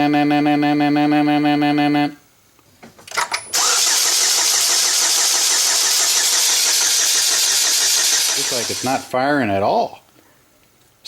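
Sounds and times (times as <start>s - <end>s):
engine cranking by starter motor: 3.1s - 9.1s.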